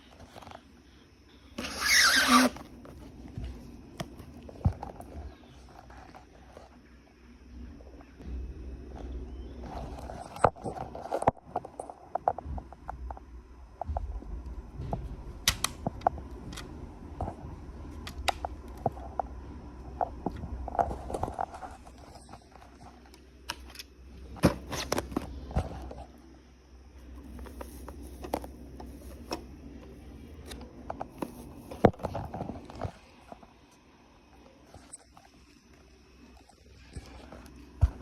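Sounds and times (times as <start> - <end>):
low steady rumble: 6.8 - 34.6.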